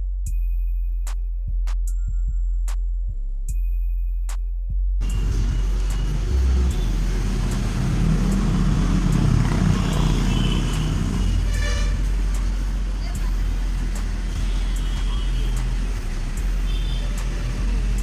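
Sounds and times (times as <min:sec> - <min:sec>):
horn tone: 0:05.0 - 0:18.0
train running rumble: 0:05.0 - 0:18.0.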